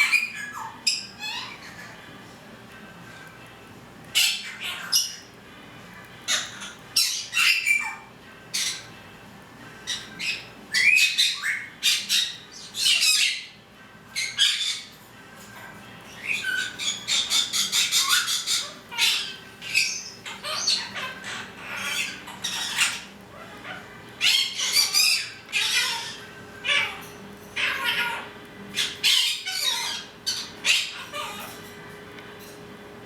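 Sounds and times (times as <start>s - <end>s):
parrot squawking: 0.0s - 2.2s, 4.1s - 5.3s, 6.3s - 9.0s, 9.9s - 13.6s, 14.2s - 15.0s, 15.6s - 31.8s.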